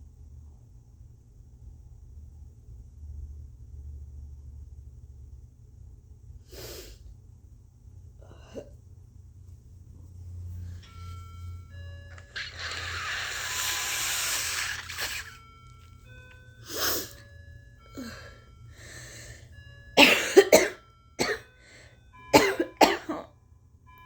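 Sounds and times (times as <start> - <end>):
woman blowing her nose: 12.2 - 15.5, 16.6 - 17.2
woman breathing: 16.6 - 19.7, 21.5 - 22.1
woman coughing phlegmy: 20.0 - 21.5, 22.3 - 23.3.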